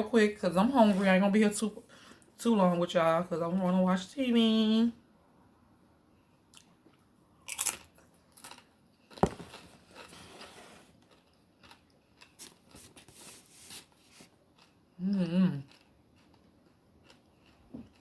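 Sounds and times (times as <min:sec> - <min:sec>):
person chewing crunchy food: 0:06.5 - 0:14.8, 0:15.6 - 0:18.0.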